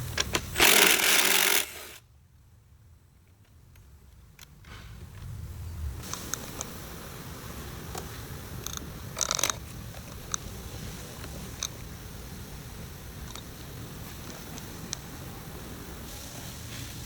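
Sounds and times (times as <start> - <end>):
low steady rumble: 0.0 - 17.0
rattling clicks: 8.0 - 10.4.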